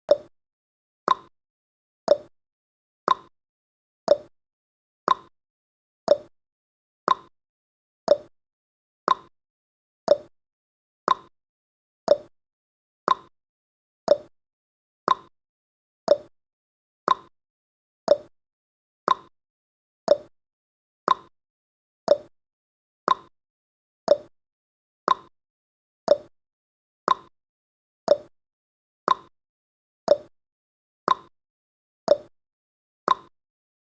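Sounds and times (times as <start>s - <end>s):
timer ticking: 0.1s - 0.3s, 1.1s - 1.3s, 2.1s - 2.3s, 3.1s - 3.3s, 4.1s - 4.3s, 5.1s - 5.3s, 6.1s - 6.3s, 7.1s - 7.3s, 8.1s - 8.3s, 9.1s - 9.3s, 10.1s - 10.3s, 11.1s - 11.3s, 12.1s - 12.3s, 13.1s - 13.3s, 14.1s - 14.3s, 15.1s - 15.3s, 16.1s - 16.3s, 17.1s - 17.3s, 18.1s - 18.3s, 19.1s - 19.3s, 20.1s - 20.3s, 21.1s - 21.3s, 22.1s - 22.3s, 23.1s - 23.3s, 24.1s - 24.3s, 25.1s - 25.3s, 26.1s - 26.3s, 27.1s - 27.3s, 28.1s - 28.3s, 29.1s - 29.3s, 30.1s - 30.3s, 31.1s - 31.3s, 32.1s - 32.3s, 33.1s - 33.3s.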